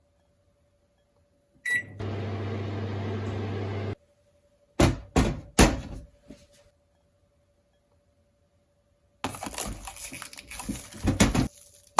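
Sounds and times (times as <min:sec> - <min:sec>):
microwave beeping: 0:01.6 - 0:04.0
microwave humming: 0:01.6 - 0:04.0.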